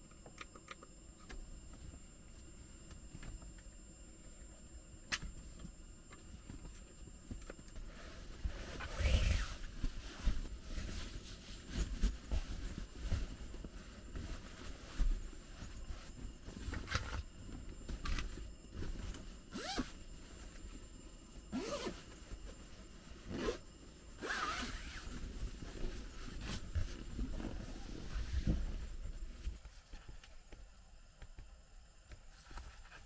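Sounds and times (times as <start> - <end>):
zipper pulled: 19.5 - 19.9, 21.6 - 22.0.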